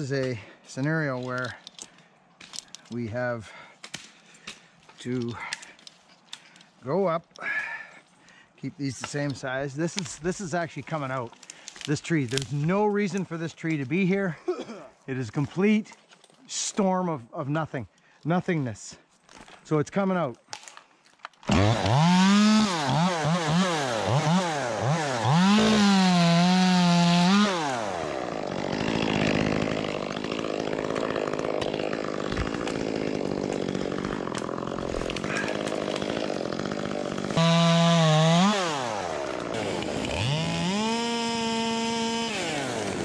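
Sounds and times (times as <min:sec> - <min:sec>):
chainsaw revving and cutting wood: 0:21.5 - 0:43.0.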